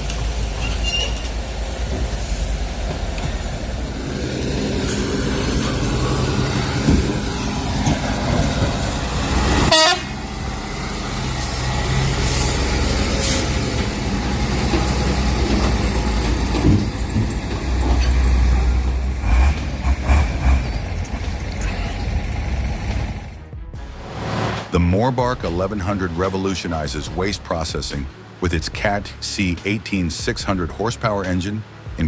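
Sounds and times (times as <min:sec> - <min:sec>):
diesel truck engine running: 0:00.0 - 0:32.0
short horn toot: 0:09.7 - 0:10.2.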